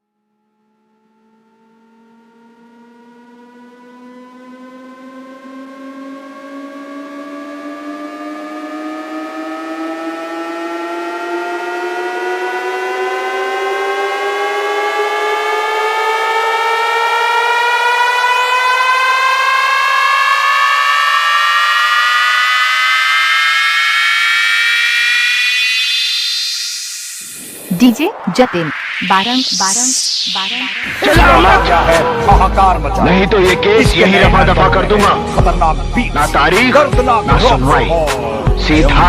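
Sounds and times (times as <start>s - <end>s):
second tone climbing faster: 0.3s - 33.3s
synthesized tone gliding upward: 0.6s - 39.0s.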